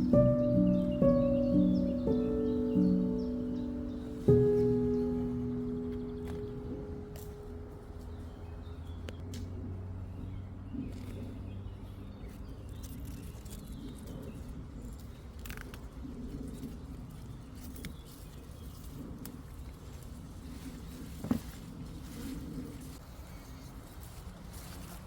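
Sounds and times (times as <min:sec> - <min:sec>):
pigeon cooing: 0:00.0 - 0:07.4.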